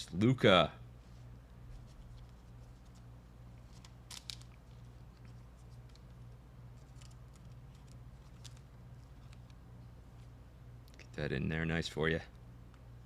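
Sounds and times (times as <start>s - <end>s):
low electrical hum: 0.0s - 13.0s
cards rustling in plastic holders: 1.8s - 10.4s.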